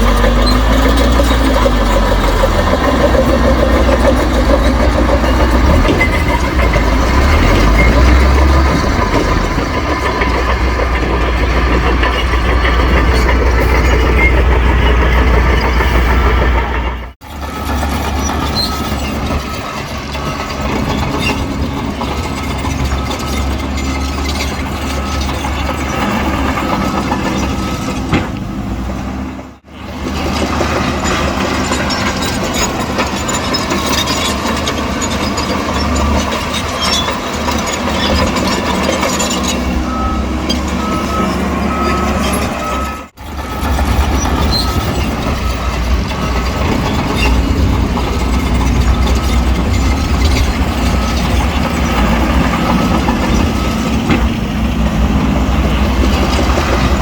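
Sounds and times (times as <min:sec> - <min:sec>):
heavy diesel engines rumbling: 0:00.0 - 0:57.0
reversing alarm beeps: 0:17.3 - 0:19.8, 0:22.1 - 0:28.1, 0:38.1 - 0:47.4.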